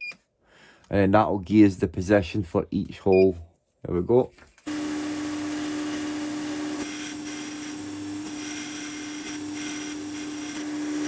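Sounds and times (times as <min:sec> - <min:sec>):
drill bit cutting metal: 0:04.7 - 0:11.0
milling machine spindle humming: 0:04.7 - 0:11.0.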